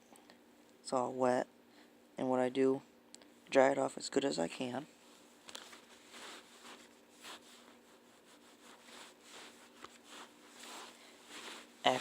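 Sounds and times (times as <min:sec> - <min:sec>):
hand wiping phone: 0:05.6 - 0:12.0.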